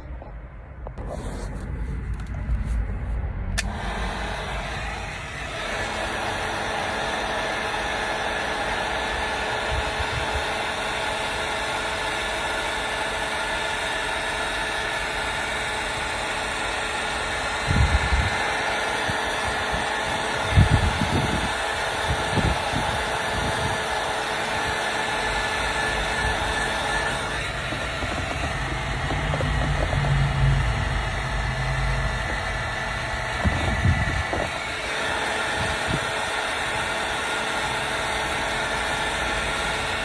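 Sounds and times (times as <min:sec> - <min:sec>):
heat gun fan whine: 0:00.8 - 0:40.0
low bumps: 0:26.2 - 0:34.0.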